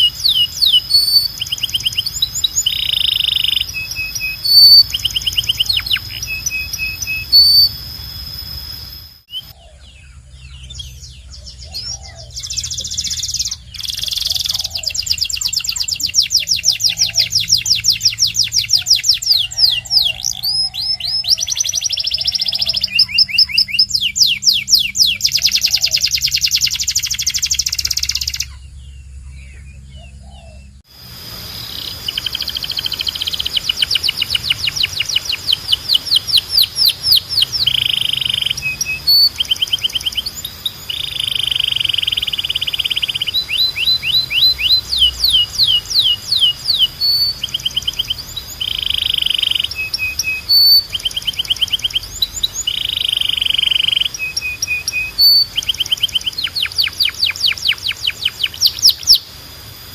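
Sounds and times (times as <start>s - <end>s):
steady hiss: 0.0s - 9.3s, 30.9s - 59.9s
canary singing trills: 0.0s - 59.9s.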